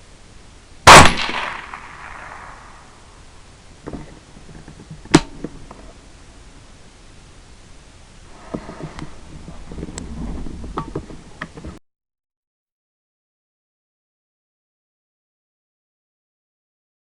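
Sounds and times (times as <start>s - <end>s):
suppressed rifle shot: 0.8s - 3.0s
sharp crack: 0.8s - 3.1s.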